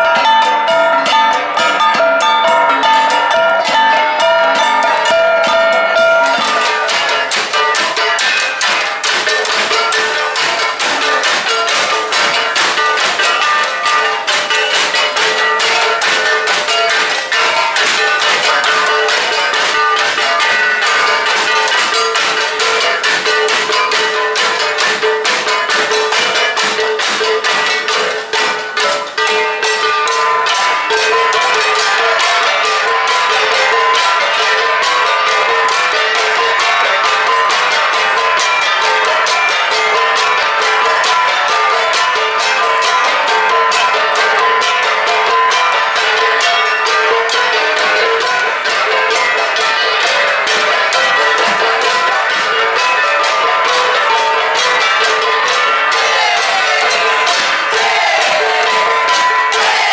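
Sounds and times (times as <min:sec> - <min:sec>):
flat gongs ringing: 0:00.0 - 0:59.9
fast struck gong beats: 0:00.1 - 0:59.9.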